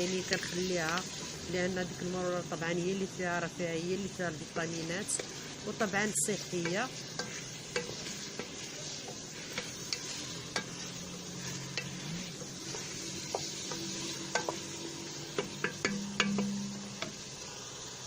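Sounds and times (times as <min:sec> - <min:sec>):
meat and onion sizzling in oil: 0:00.0 - 0:18.0
utensil clicking against pot: 0:15.4 - 0:17.1.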